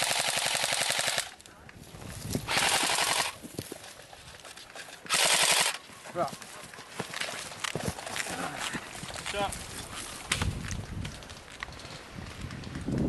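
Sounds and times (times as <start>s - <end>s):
airsoft rifle rapid shots: 0.0s - 1.3s, 2.5s - 3.4s, 5.1s - 5.8s.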